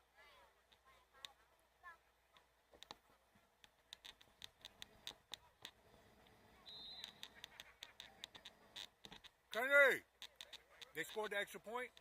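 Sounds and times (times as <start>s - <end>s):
faint sharp clicks: 2.3s - 3.0s, 3.6s - 12.0s.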